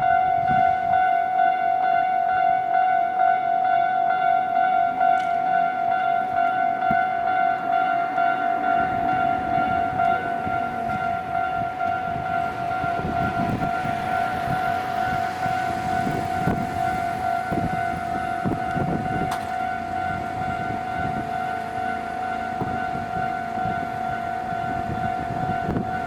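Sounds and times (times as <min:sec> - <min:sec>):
level-crossing alarm ringing: 0:00.0 - 0:26.0
train wheels rumbling and thumping: 0:05.2 - 0:26.0.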